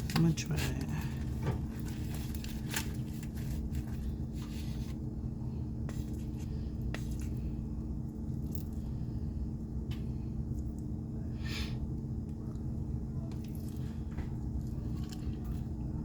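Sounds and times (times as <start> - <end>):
biting and chewing food: 13.2 - 16.0.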